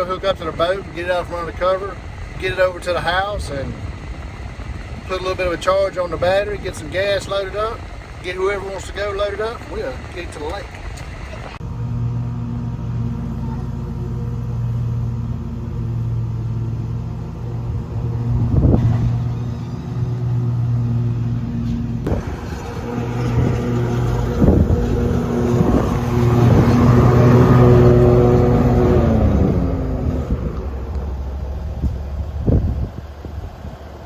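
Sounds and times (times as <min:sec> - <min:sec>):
vehicle engine humming: 0:00.0 - 0:34.0.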